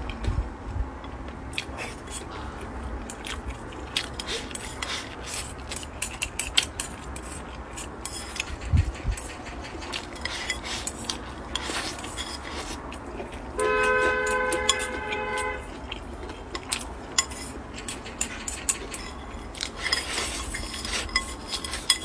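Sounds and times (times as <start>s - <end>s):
utensils clinking on dishes: 3.0s - 22.0s
two-tone vehicle horn: 13.6s - 15.8s.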